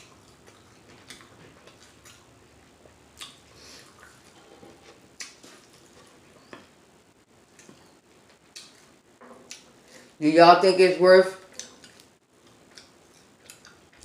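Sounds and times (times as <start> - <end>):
person chewing with lip smacks: 0.0 - 6.7, 7.5 - 8.9, 11.5 - 14.0.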